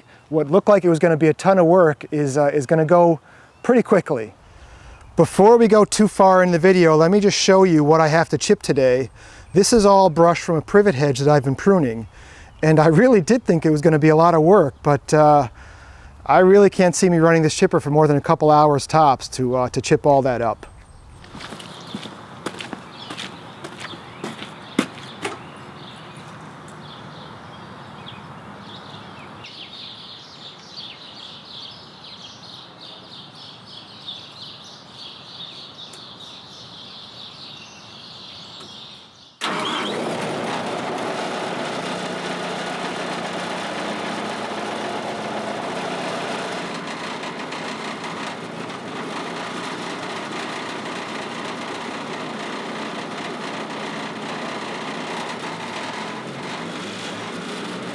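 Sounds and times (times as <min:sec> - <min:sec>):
wood chipper diesel engine running: 0:04.5 - 0:13.5, 0:14.7 - 0:16.4, 0:39.4 - 0:57.9.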